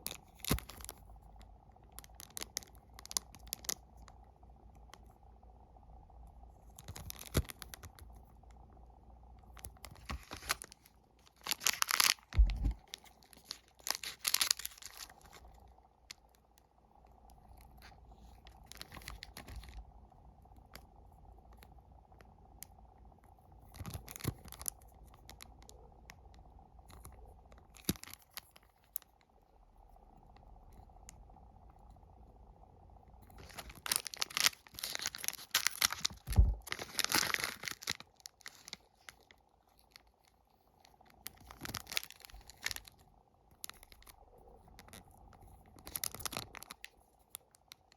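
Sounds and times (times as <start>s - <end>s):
plastic wrappers crinkling and tearing: 0.0s - 1.0s, 1.9s - 3.8s, 6.8s - 8.0s, 9.6s - 16.3s, 17.5s - 19.8s, 23.7s - 25.7s, 26.9s - 29.1s, 33.4s - 43.0s, 43.6s - 47.9s
faint steady hum: 0.0s - 47.9s
low thump: 12.4s - 12.8s.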